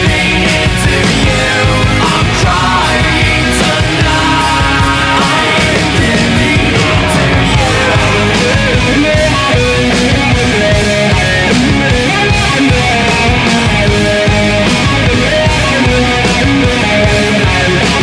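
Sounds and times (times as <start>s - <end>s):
hard rock music: 0.0s - 18.0s.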